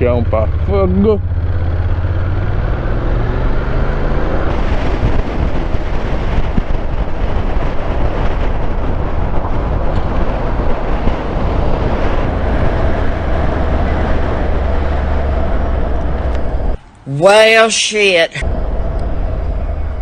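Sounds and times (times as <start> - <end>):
motorcycle engine running: 0.0 - 7.6
wind and road rush: 0.0 - 20.0.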